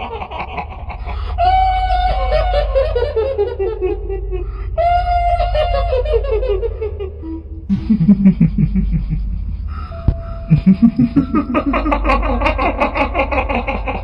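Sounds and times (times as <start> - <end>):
cackling laughter: 0.0 - 4.5, 5.5 - 9.7, 10.5 - 14.0
low droning background: 0.0 - 14.0.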